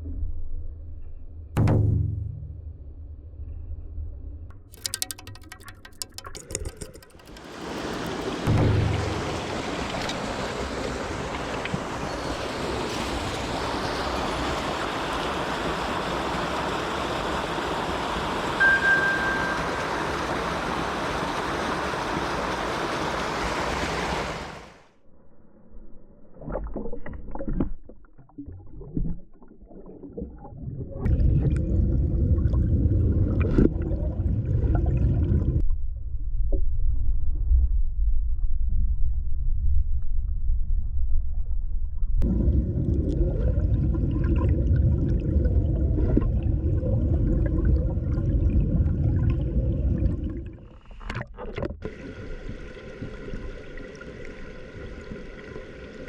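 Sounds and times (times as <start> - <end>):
muffled underwater current: 4.5 - 16.0, 18.3 - 35.8, 38.2 - 56.0
scattered knocks: 4.7 - 10.0
stream rushing: 7.2 - 24.9
loud low rumble: 8.5 - 11.3, 34.6 - 49.2.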